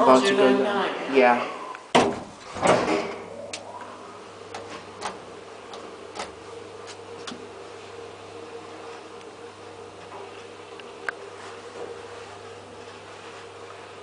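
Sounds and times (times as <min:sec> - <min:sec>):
elevator running hum: 0:00.0 - 0:14.0
elevator door shutting: 0:01.9 - 0:07.6.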